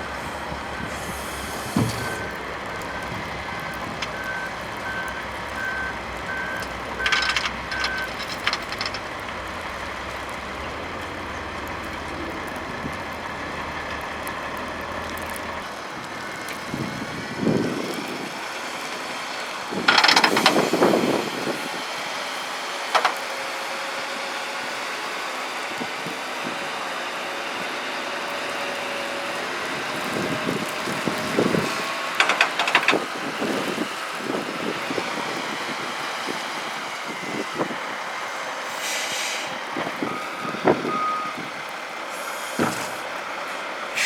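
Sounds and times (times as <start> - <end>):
low engine rumble: 0.0 - 18.7
clunks: 0.1 - 9.7, 19.9 - 20.7, 23.0 - 23.2, 32.1 - 33.1
reversing alarm beeping: 0.4 - 8.8, 40.0 - 41.4
bangs and rattles: 6.6 - 9.4, 32.2 - 33.1.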